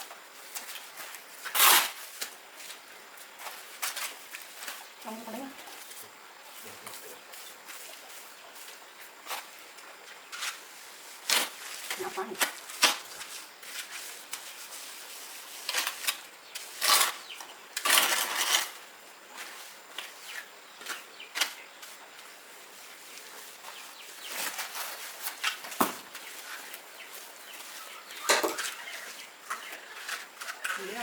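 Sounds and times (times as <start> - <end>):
scrapes and knocks of handled materials: 5.7 - 22.4, 23.0 - 31.0.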